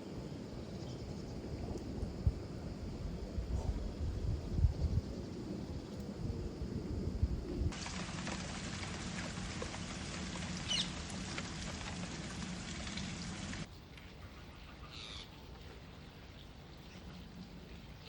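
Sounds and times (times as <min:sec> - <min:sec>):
steady hiss: 0:00.0 - 0:13.7.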